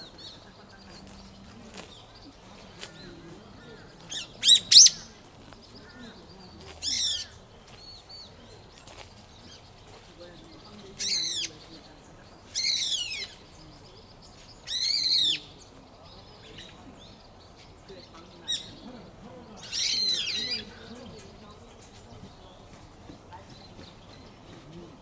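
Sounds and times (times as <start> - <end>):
faint bird chirps: 3.1 - 21.3
bird calling harshly: 4.1 - 5.2, 12.5 - 13.4, 14.6 - 15.6, 19.6 - 20.8.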